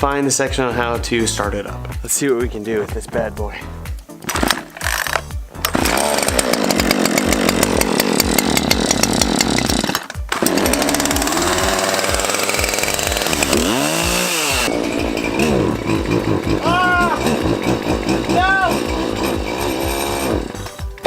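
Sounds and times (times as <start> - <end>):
chainsaw running and revving: 5.6 - 21.0.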